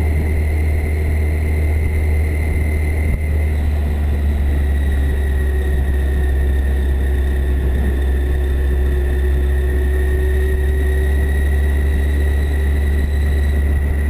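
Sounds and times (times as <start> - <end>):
motorcycle engine rumbling: 0.0 - 14.0.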